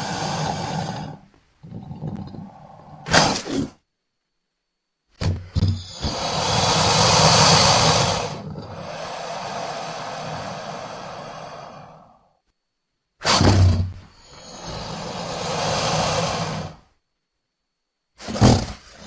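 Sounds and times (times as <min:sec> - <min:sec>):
crocodile hissing: 0:00.0 - 0:03.8, 0:05.6 - 0:12.4, 0:13.2 - 0:16.9.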